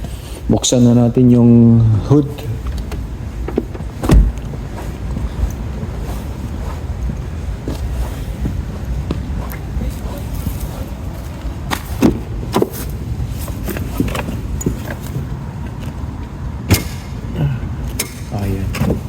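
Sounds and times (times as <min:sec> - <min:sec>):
wind rumbling on microphone: 0:01.6 - 0:18.0
clicks and knocks from truck hood: 0:02.9 - 0:04.5.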